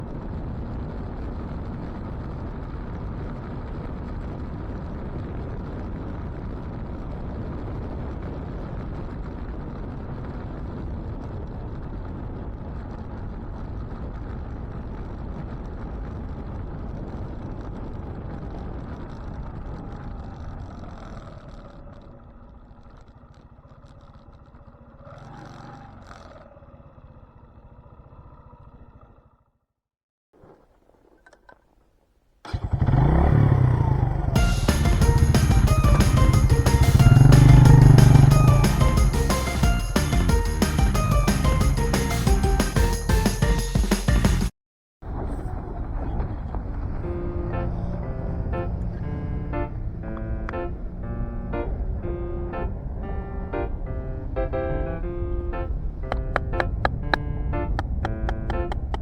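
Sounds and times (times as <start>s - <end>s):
vehicle engine rumbling: 30.4s - 44.5s, 45.1s - 59.0s
pitched engine tone bending: 32.5s - 44.5s, 47.0s - 59.0s.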